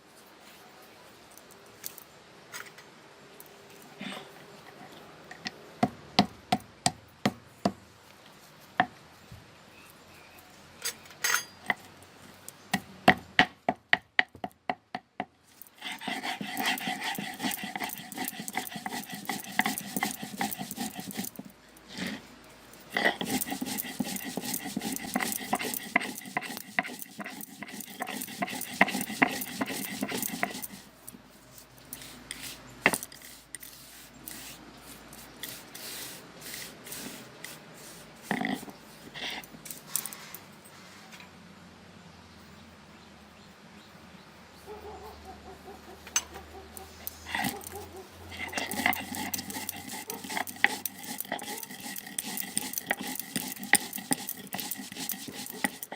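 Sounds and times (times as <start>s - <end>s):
stone roller grinding strokes: 15.6s - 22.3s, 22.9s - 40.1s, 46.2s - 55.9s.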